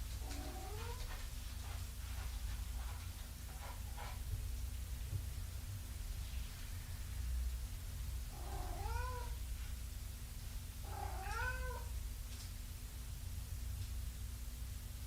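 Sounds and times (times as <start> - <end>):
steady low hum: 0.0 - 15.0
cat meowing: 8.3 - 9.4, 10.8 - 11.9.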